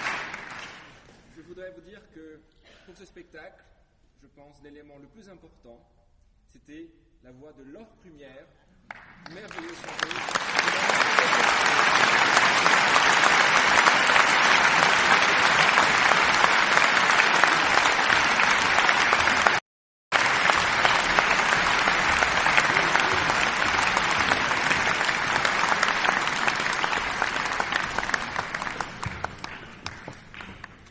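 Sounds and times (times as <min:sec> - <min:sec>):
audience applauding: 0:00.0 - 0:01.1, 0:08.9 - 0:30.9.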